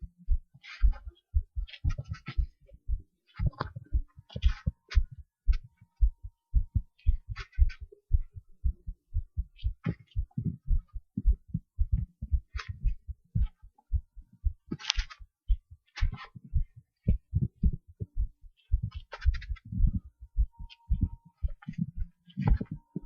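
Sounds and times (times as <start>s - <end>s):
heartbeat thumps: 0.0s - 23.0s
scratchy rustles: 14.7s - 15.2s.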